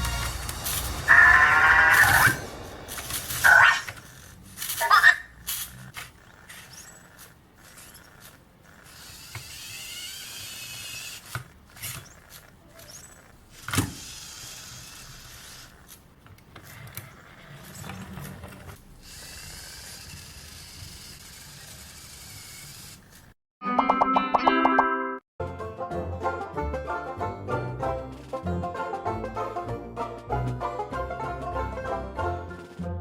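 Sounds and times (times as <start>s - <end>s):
toy robot motors whirring: 0.0s - 23.4s.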